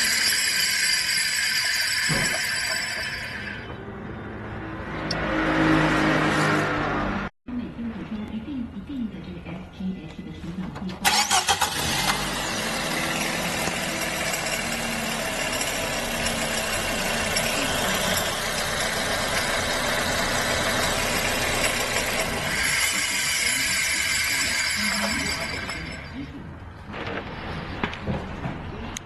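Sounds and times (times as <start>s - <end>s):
rasping pulley noise: 0.0s - 3.8s, 11.8s - 26.3s
car engine running: 11.1s - 23.1s.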